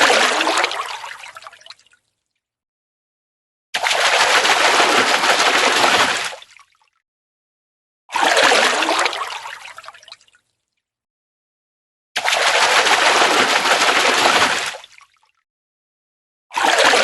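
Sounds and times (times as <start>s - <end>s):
fish splashing in water: 3.8s - 6.8s, 12.2s - 15.4s, 16.6s - 17.0s.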